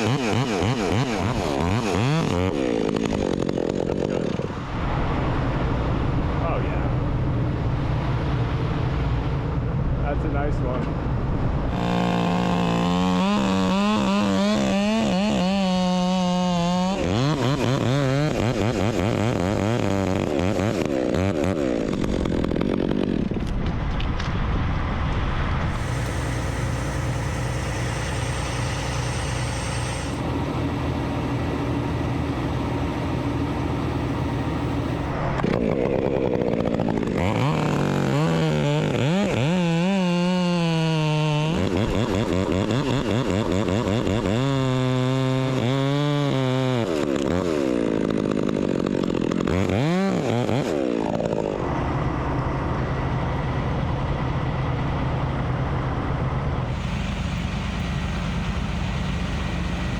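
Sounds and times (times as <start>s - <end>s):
chainsaw cutting: 0.0s - 4.6s, 11.7s - 23.5s, 25.7s - 52.0s, 56.6s - 59.9s.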